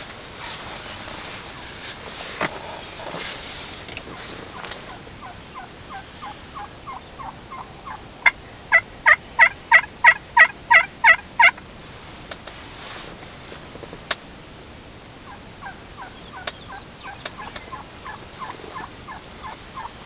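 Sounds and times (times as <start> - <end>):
turkey hen yelping: 4.5 - 11.5, 15.3 - 20.0.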